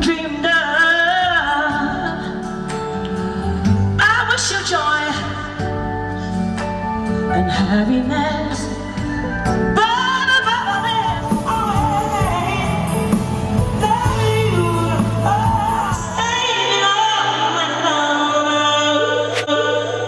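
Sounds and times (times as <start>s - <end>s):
woman singing: 0.0s - 6.3s, 7.2s - 20.0s
band accompaniment: 5.6s - 16.6s.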